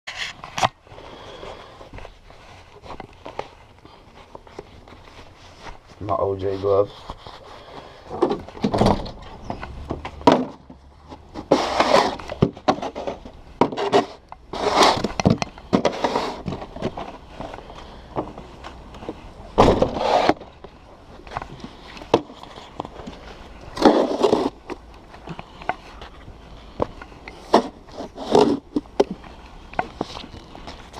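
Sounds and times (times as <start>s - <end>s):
snow shovel scraping snow: 11.4s - 13.2s, 13.8s - 15.1s, 15.8s - 16.5s, 19.8s - 20.4s, 23.8s - 24.6s.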